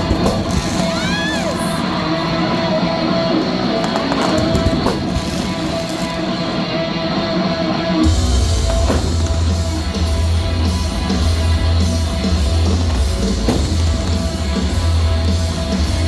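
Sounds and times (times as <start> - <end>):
electric guitar rock music: 0.0 - 16.0
heavy bass line: 8.0 - 16.0.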